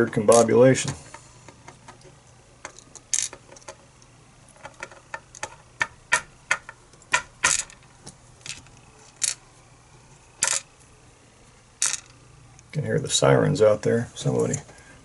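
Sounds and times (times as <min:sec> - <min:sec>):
metal lock parts clicking: 0:02.6 - 0:03.8, 0:04.5 - 0:09.4, 0:10.4 - 0:10.7.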